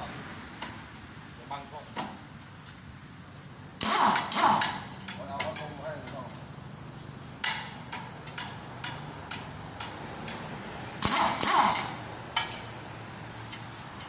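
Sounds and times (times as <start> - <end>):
sharp metallic taps: 3.8 - 6.3, 7.4 - 10.4.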